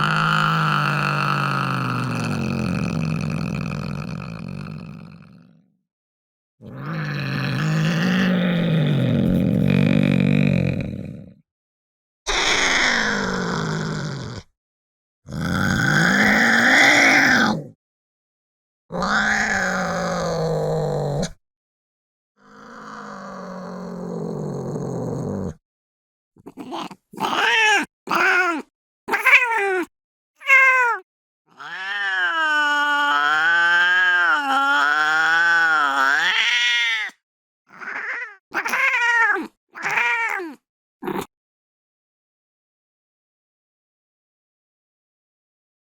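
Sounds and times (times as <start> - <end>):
cat yowling: 12.3 - 14.1, 26.7 - 40.6.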